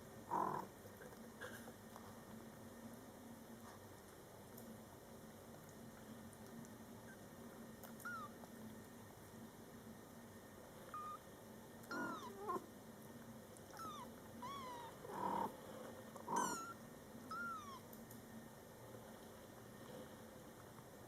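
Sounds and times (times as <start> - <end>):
kittens meowing: 8.0 - 8.4, 11.9 - 12.6, 13.8 - 15.3, 16.3 - 17.8.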